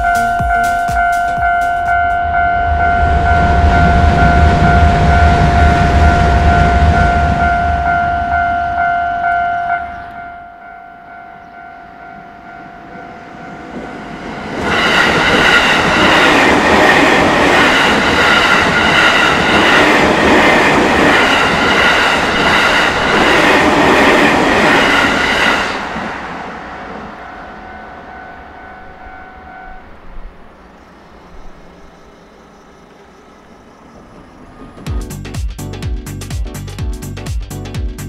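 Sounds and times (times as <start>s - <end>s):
crossing warning bell: 0.0s - 34.2s
train wheels clattering on rails: 13.7s - 28.5s.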